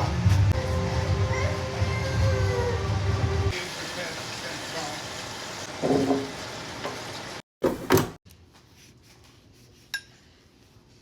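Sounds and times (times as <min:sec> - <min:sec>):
food frying hiss: 0:03.5 - 0:07.4.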